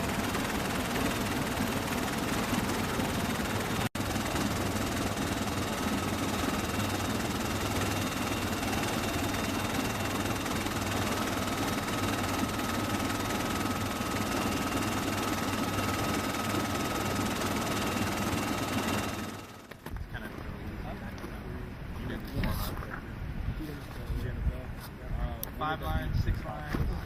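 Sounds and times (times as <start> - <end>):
helicopter engine and rotor: 0.0 - 19.7.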